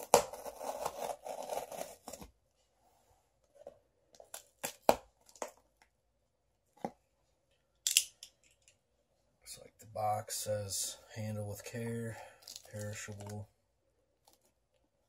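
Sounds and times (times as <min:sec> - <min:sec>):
packing tape tearing off box: 0:00.0 - 0:02.3.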